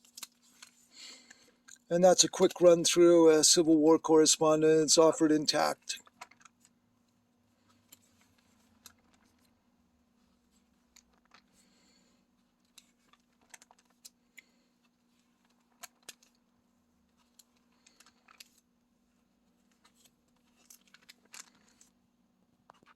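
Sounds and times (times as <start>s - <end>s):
faint steady hum: 0.0s - 22.9s.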